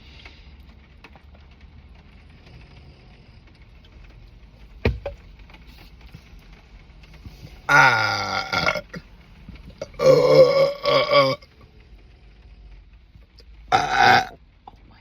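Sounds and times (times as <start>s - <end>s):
sharp knock: 4.8s - 5.2s
handling noises: 4.8s - 6.3s.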